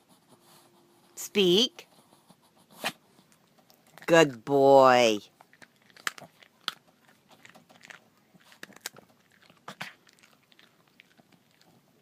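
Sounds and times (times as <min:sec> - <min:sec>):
dog chewing a treat: 0:02.8 - 0:04.1, 0:05.3 - 0:12.0.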